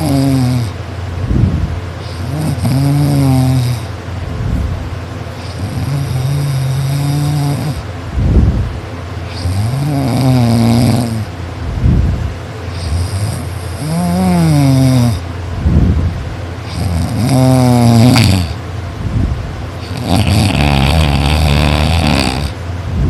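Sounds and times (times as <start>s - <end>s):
person snoring loudly: 0.0s - 0.8s, 2.0s - 3.9s, 5.4s - 7.8s, 9.3s - 11.3s, 12.7s - 15.2s, 16.7s - 18.6s, 19.8s - 22.6s.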